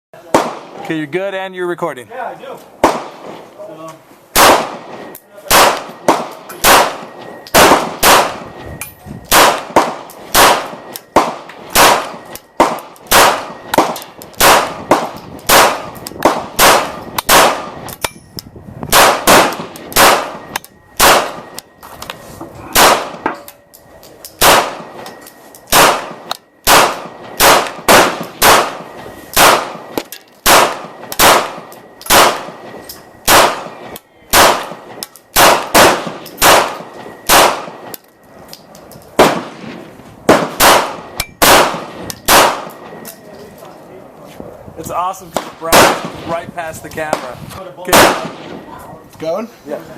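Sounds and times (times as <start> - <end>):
pistol gunshots: 0.2 - 0.9, 2.8 - 3.4, 4.3 - 8.6, 9.3 - 18.1, 18.9 - 21.6, 22.7 - 23.5, 24.4 - 25.1, 25.7 - 38.0, 39.2 - 42.9, 45.3 - 46.3, 47.9 - 48.6.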